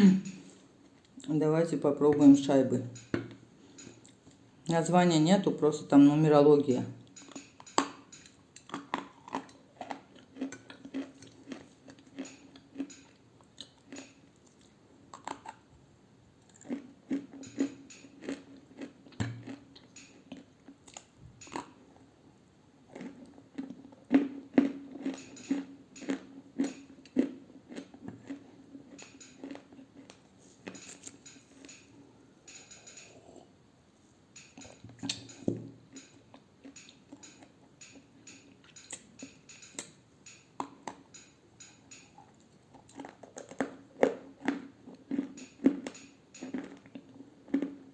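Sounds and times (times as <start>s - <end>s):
crunchy biting and chewing: 7.2s - 15.7s, 16.4s - 22.1s, 22.8s - 31.8s, 40.6s - 47.9s.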